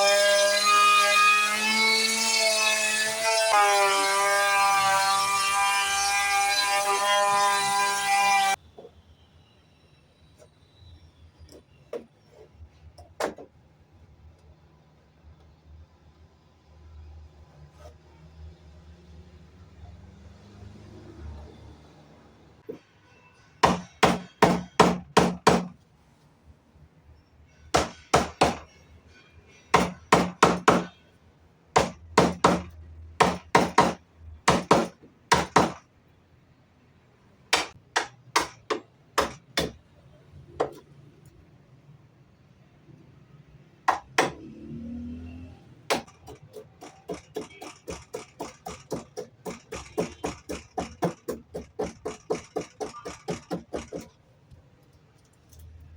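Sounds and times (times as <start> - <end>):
hammer striking wood: 23.6 - 25.8, 27.7 - 28.7, 29.7 - 31.0, 31.8 - 35.9, 37.5 - 39.8, 43.9 - 44.5, 45.9 - 54.1.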